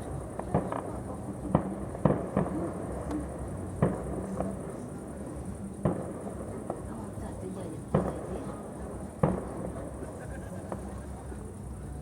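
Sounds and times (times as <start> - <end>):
fireworks bangs: 0.0 - 4.7, 5.8 - 7.0, 7.8 - 10.1.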